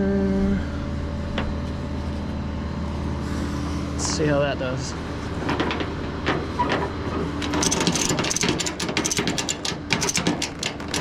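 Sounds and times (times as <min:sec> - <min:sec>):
metallic clicking and rattling: 0:07.4 - 0:11.0.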